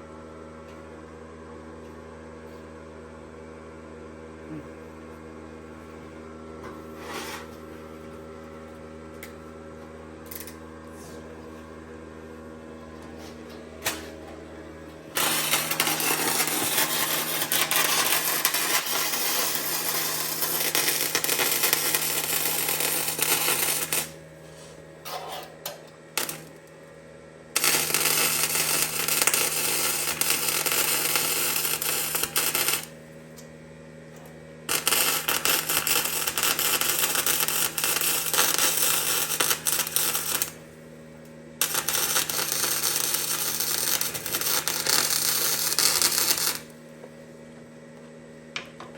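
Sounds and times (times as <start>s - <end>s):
steady hum: 0.0s - 48.9s
welder arc crackling and sizzling: 10.3s - 11.1s, 13.0s - 26.9s, 27.5s - 33.5s, 34.2s - 46.8s.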